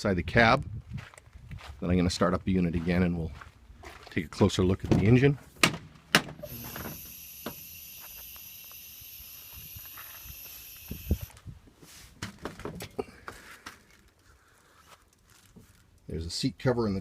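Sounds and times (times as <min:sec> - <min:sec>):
compressed air hissing: 0:06.4 - 0:11.4.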